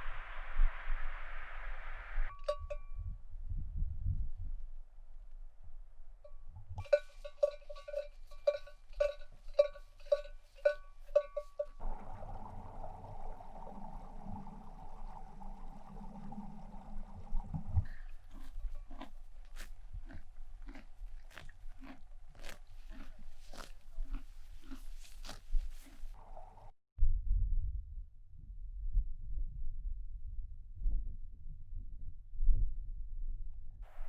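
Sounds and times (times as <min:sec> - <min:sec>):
livestock bell clanking: 0:02.3 - 0:03.0, 0:06.8 - 0:11.8
crisp crunches with soft thuds: 0:18.4 - 0:26.2.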